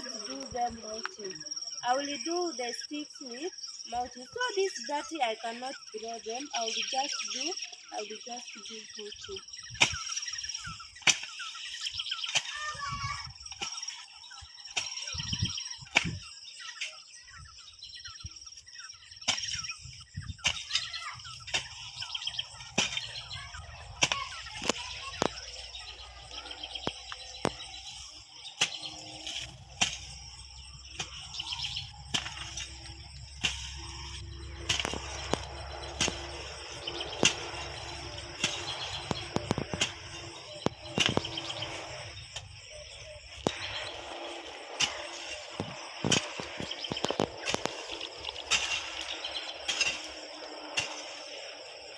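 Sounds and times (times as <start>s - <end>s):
birds chirping: 0.0s - 51.9s
dry sticks knocking and rustling: 23.9s - 51.3s.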